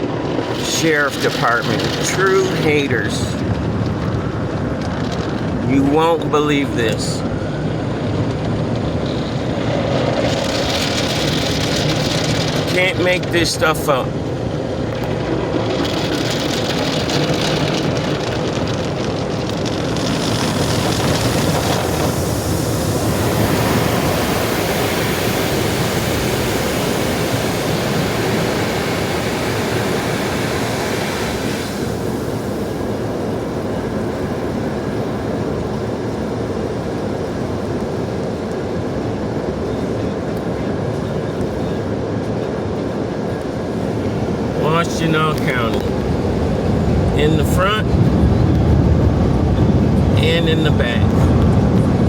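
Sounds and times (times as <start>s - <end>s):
automatic car wash rushing: 0.0s - 52.0s
low rumble: 14.0s - 38.0s.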